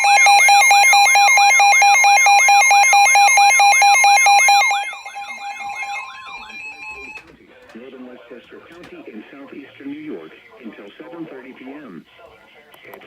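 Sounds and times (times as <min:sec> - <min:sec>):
steady alert tone: 0:04.1 - 0:07.2.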